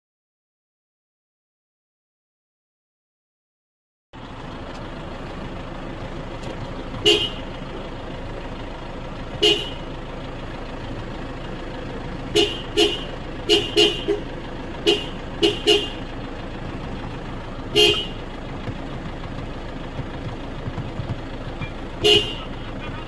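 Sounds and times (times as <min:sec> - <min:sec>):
car horn blasts: 0:06.9 - 0:07.7, 0:09.3 - 0:10.0, 0:12.2 - 0:16.8, 0:17.5 - 0:18.5, 0:21.6 - 0:23.0.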